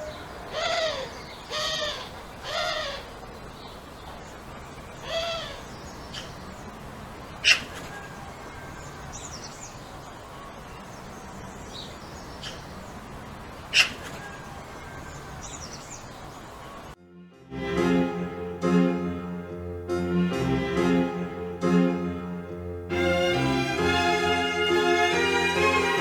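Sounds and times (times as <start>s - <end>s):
faint bird chirps: 0.0s - 17.0s
steady low hiss: 0.0s - 26.0s
piano music: 17.0s - 26.0s.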